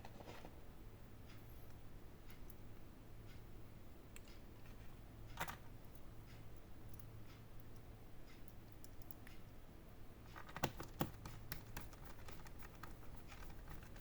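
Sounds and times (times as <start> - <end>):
laptop parts clicking: 10.3 - 14.0.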